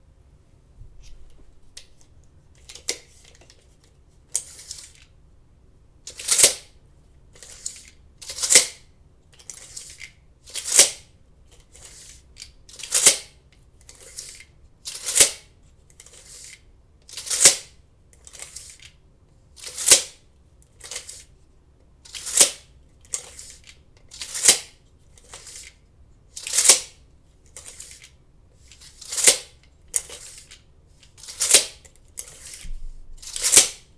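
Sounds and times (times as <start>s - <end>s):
tape measure clicks: 26.4s - 30.6s, 31.2s - 32.6s, 33.2s - 33.9s.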